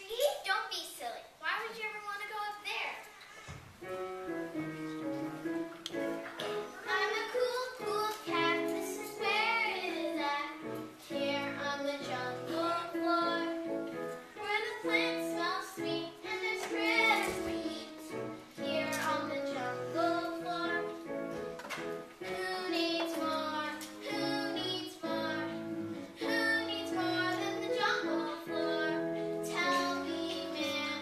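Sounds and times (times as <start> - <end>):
musical accompaniment: 3.8 - 31.0
children singing: 6.4 - 13.8.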